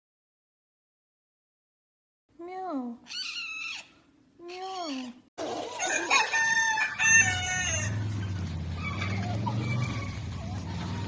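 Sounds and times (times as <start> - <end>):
high-pitched animal calls: 3.0 - 5.2, 8.7 - 10.8.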